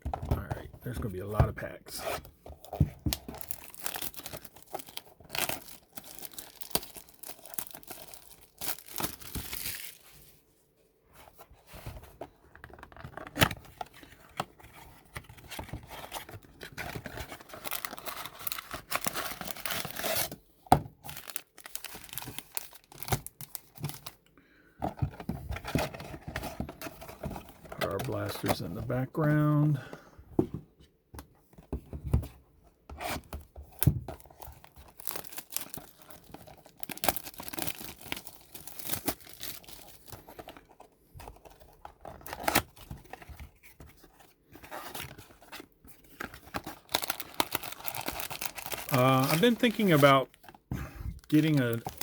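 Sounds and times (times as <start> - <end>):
card wrappers crinkling and tearing: 2.5 - 10.2, 12.7 - 20.4, 21.0 - 24.2, 25.6 - 29.8, 33.2 - 52.0
cardboard box torn open: 15.5 - 20.4.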